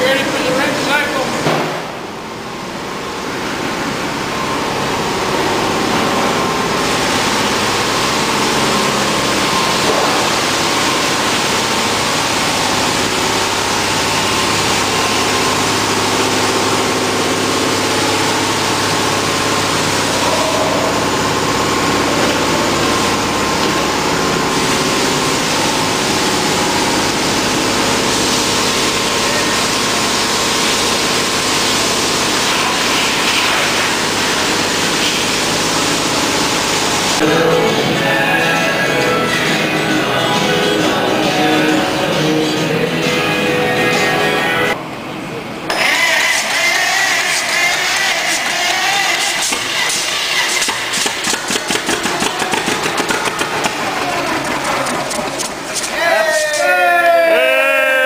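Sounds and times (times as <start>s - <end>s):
engine-like machine hum: 1.7s - 32.2s, 49.3s - 55.8s.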